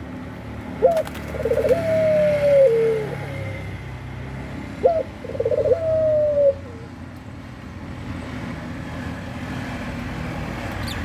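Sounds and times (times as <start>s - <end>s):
dove cooing: 0.8s - 3.3s, 4.8s - 6.9s.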